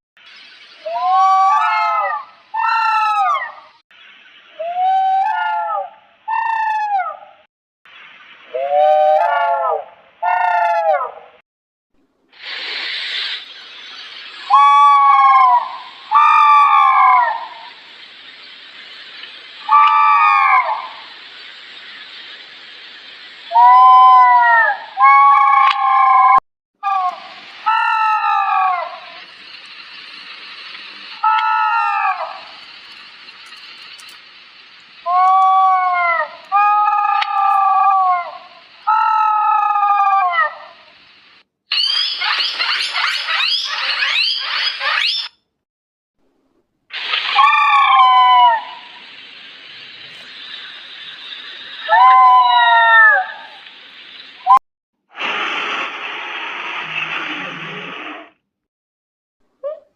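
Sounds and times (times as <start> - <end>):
steady hiss: 0.2 - 1.6, 12.0 - 25.4, 27.1 - 41.5, 46.9 - 54.5, 55.2 - 58.2.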